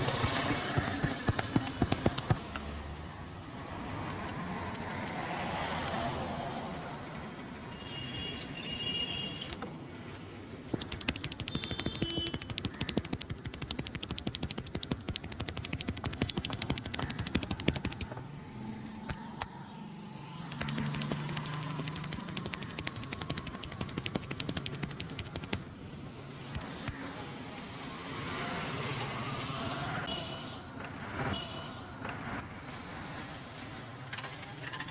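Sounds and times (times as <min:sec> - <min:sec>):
rapid hand slaps: 0:01.0 - 0:02.5, 0:10.8 - 0:18.2, 0:20.5 - 0:25.6.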